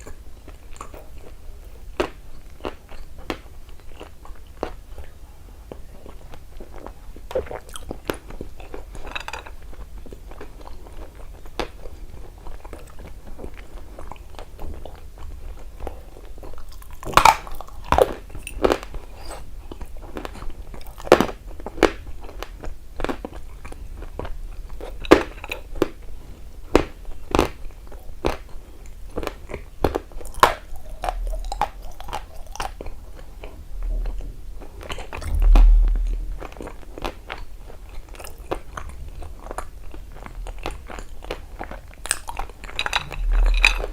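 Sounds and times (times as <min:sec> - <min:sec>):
crunchy chewing: 0:00.0 - 0:36.8, 0:38.1 - 0:43.9
low thud: 0:31.0 - 0:31.9, 0:33.7 - 0:37.0, 0:43.0 - 0:43.9.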